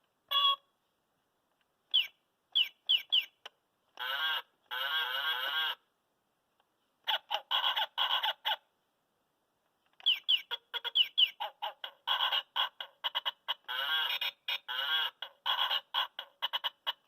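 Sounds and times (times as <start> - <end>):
toy bird calls: 0.3 - 0.7, 1.9 - 5.9, 7.0 - 8.7, 10.0 - 17.0.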